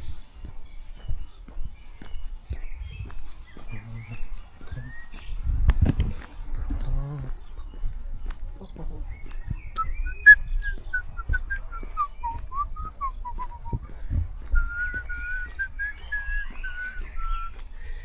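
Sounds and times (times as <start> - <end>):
person whistling a tune: 14.6 - 17.5.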